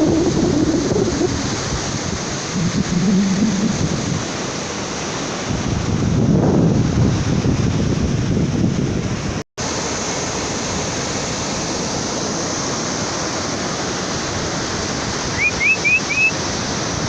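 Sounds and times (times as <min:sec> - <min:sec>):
sea surf rushing: 0:00.0 - 0:17.0
short rising chirps: 0:15.4 - 0:16.3.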